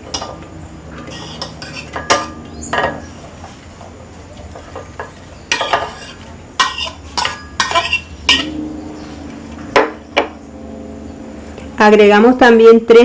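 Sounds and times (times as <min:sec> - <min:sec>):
kitchen utensils and dishes clattering: 0:00.0 - 0:08.6.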